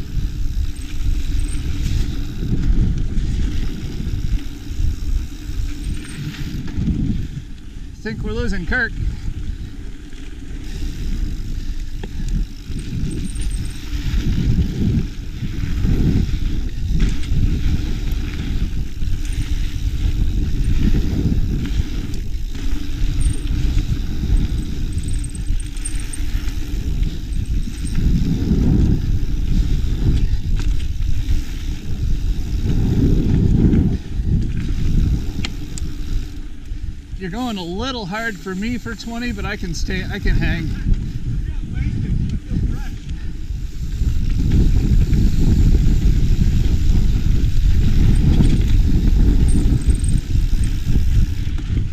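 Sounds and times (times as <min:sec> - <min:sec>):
brakes squeaking: 0:00.0 - 0:08.9, 0:09.5 - 0:41.1, 0:43.0 - 0:51.9
bike rolling on dirt trail: 0:00.0 - 0:51.9
wind buffeting microphone: 0:00.0 - 0:51.9
bike knocks and rattles: 0:11.0 - 0:29.4, 0:47.5 - 0:51.9.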